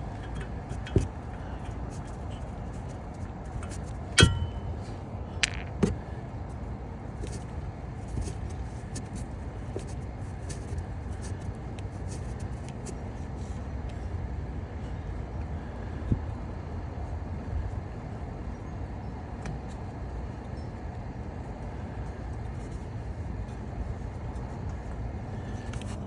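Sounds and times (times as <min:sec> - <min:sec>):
metal tools clanking on steel: 0:00.0 - 0:02.4, 0:03.6 - 0:05.9
steady low rumble: 0:00.0 - 0:19.2.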